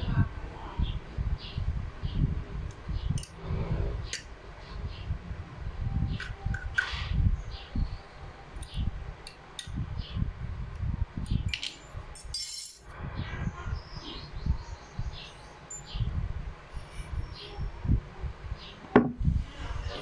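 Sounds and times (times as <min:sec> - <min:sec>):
metal parts clicking and clinking: 0:11.3 - 0:12.9, 0:15.7 - 0:16.0
parts knocking on a surface: 0:18.9 - 0:19.2.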